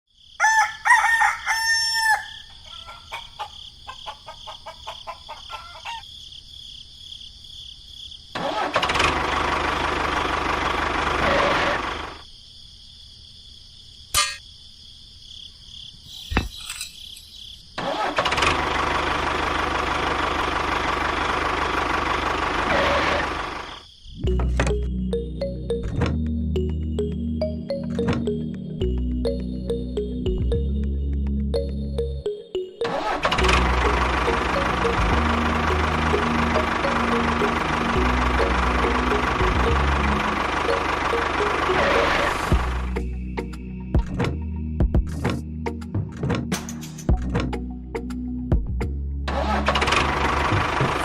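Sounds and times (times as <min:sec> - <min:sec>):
rooster crowing: 0:00.4 - 0:06.2
engine running steadily: 0:08.4 - 0:12.2, 0:18.0 - 0:26.0, 0:33.0 - 0:43.2, 0:47.2 - 0:51.0.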